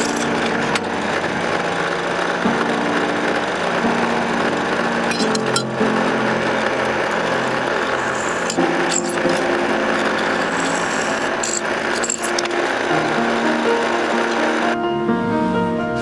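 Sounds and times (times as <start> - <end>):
electric power tool working wood: 0.0 - 14.8.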